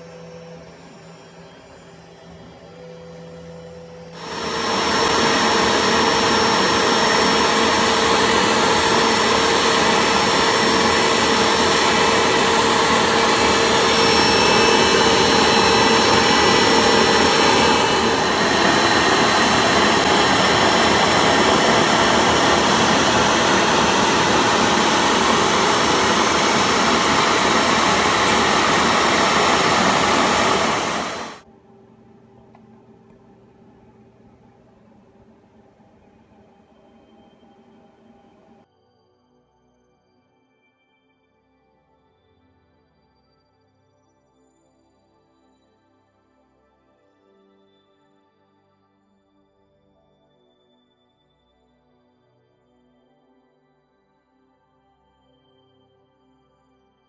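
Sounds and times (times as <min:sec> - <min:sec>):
router machine whining: 0:00.0 - 0:34.3.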